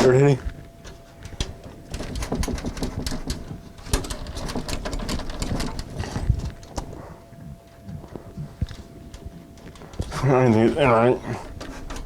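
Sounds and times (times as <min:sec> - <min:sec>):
hard drive rattling in metal case: 0:01.4 - 0:06.9, 0:09.2 - 0:12.0.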